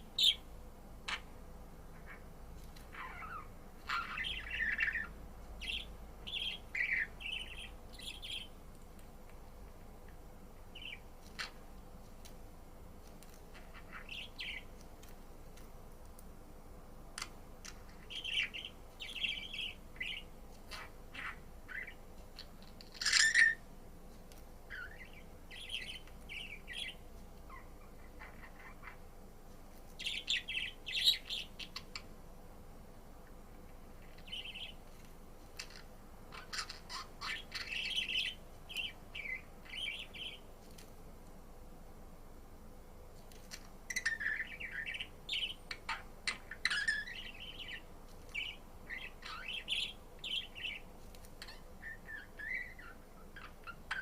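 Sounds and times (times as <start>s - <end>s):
budgerigar chirping: 2.9s - 8.5s, 18.1s - 22.0s, 22.9s - 23.6s, 24.7s - 29.0s, 35.6s - 40.4s, 43.9s - 47.8s, 48.4s - 50.8s, 51.4s - 54.0s.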